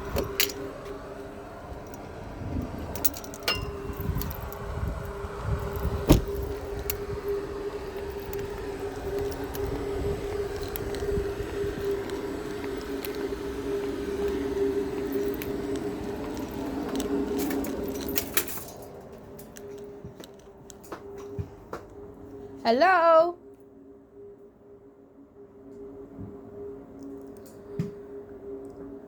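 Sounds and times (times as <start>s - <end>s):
steady motor hum: 0.0s - 22.6s
footstep-like thuds: 5.9s - 6.7s.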